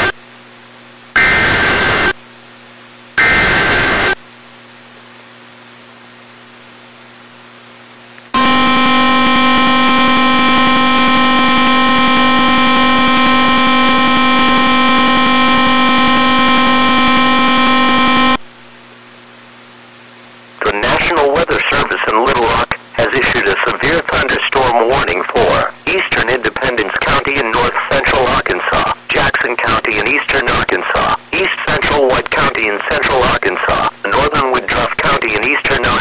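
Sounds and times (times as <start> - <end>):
steady attention tone: 8.4 - 18.4, 20.6 - 36.0
low hum: 8.4 - 18.8.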